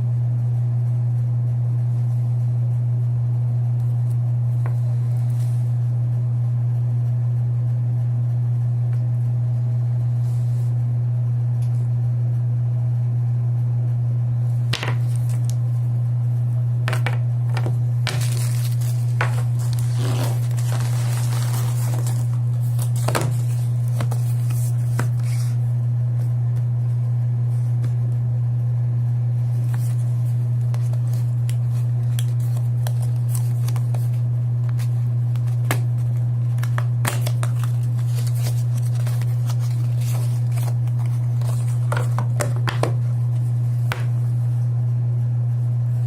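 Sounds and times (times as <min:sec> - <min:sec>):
low electrical hum: 0:00.0 - 0:46.0
plastic packaging crinkling: 0:16.9 - 0:25.4, 0:36.5 - 0:43.0.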